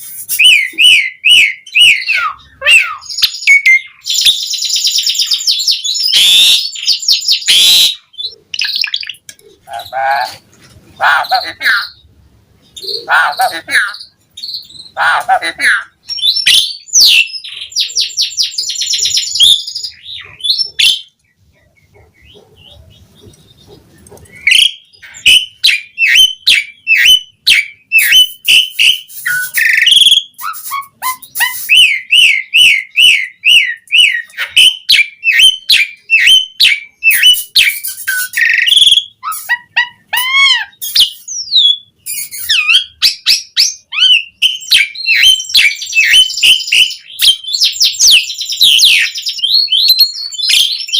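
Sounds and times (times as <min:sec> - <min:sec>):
starling singing: 0:00.0 - 0:50.9.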